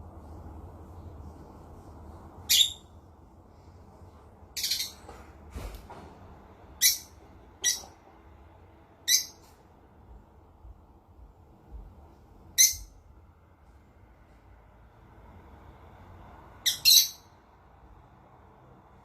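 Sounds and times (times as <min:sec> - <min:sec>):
parrot squawking: 0:02.5 - 0:02.9, 0:04.6 - 0:05.0, 0:06.8 - 0:08.0, 0:09.0 - 0:09.4, 0:12.6 - 0:12.9, 0:16.6 - 0:17.3.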